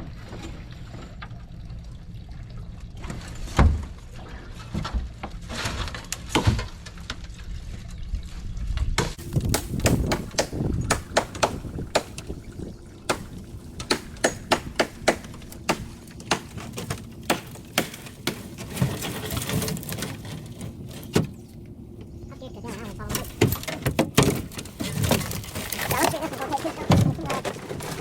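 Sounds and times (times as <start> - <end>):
sharp knocks and clicks: 9.1 - 12.4.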